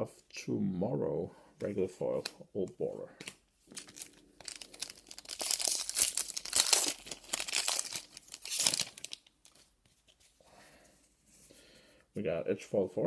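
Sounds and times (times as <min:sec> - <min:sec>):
foil wrapper tearing and crinkling: 0:03.7 - 0:09.7.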